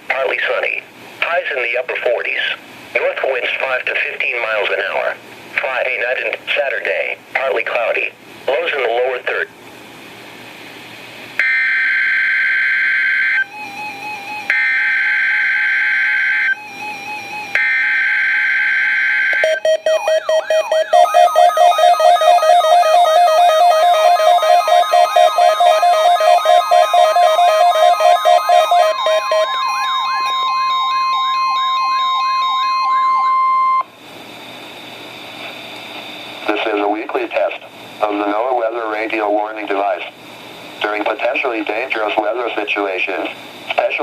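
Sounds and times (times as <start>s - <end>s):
warbling siren tone: 11.4s - 33.8s
steady high warning tone: 11.4s - 42.6s
pulsing beep: 19.3s - 33.9s.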